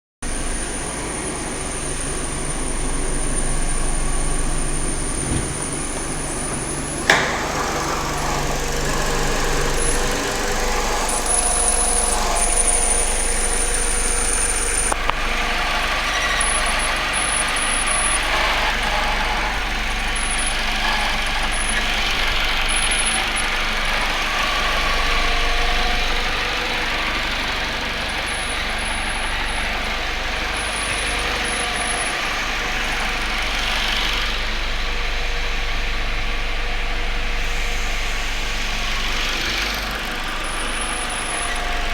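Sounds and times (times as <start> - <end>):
car engine running: 0.3 - 41.9
sharp click: 7.0 - 8.8.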